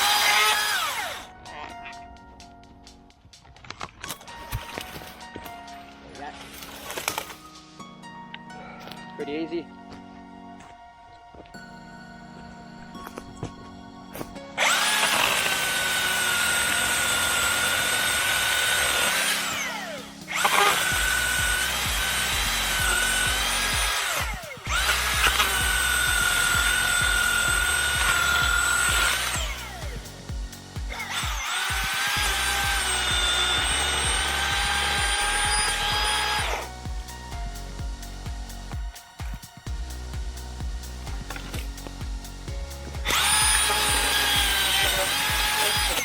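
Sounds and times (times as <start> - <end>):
battery chainsaw cutting wood: 0.0 - 1.3, 14.6 - 36.8, 41.0 - 41.9, 42.9 - 46.0.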